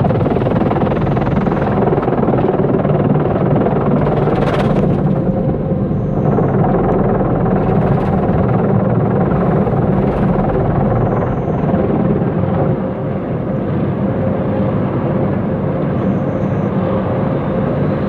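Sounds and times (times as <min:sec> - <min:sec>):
rushing noise: 0:00.0 - 0:12.4.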